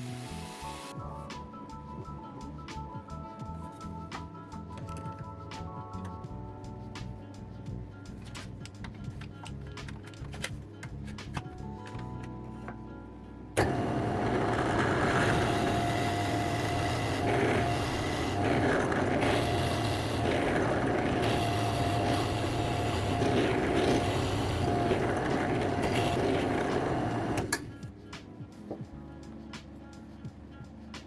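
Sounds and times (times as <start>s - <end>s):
power tool motor whirring: 13.6s - 27.6s.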